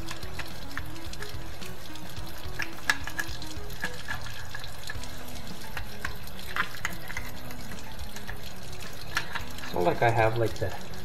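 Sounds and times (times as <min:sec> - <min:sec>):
faint background music: 0:00.0 - 0:11.0
small crackling clicks: 0:00.0 - 0:11.0
water dripping and splashing: 0:00.0 - 0:11.0.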